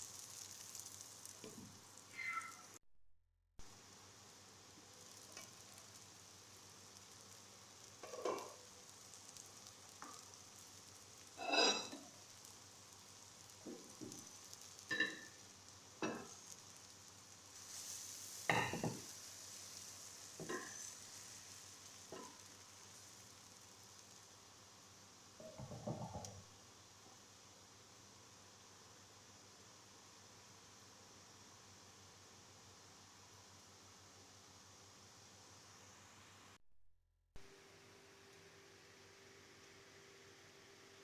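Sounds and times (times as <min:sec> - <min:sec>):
omelette sizzling in pan: 0:00.0 - 0:02.8, 0:03.6 - 0:36.6, 0:37.4 - 0:41.0
spatula scraping pan: 0:11.4 - 0:12.0.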